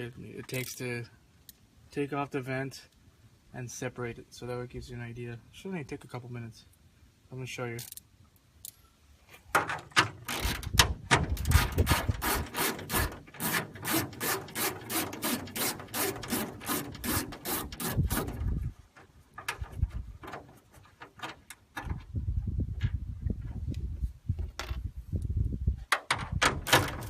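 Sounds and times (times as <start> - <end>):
hand tool scraping: 11.4 - 18.6.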